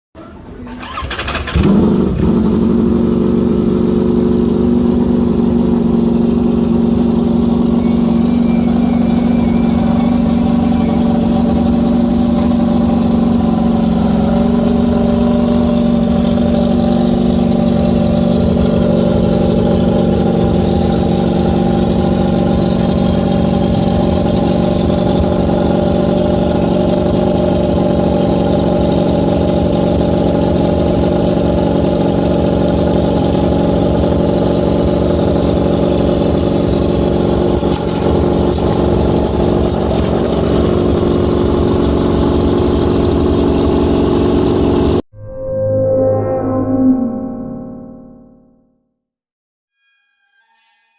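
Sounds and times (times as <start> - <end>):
motorcycle engine fast idle: 0.7 - 45.0.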